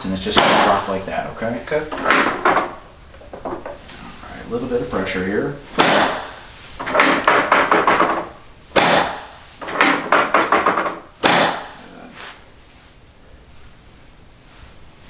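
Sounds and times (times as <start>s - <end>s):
table section dropping clack: 1.9s - 3.8s, 5.8s - 11.8s.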